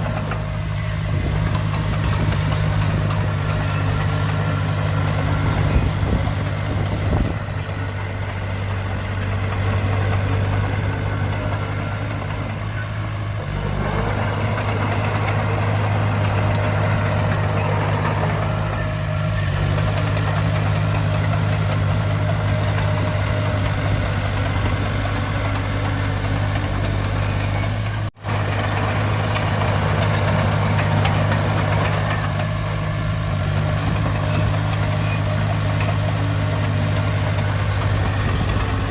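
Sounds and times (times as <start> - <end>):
heavy machinery diesel engine: 0.0 - 38.9.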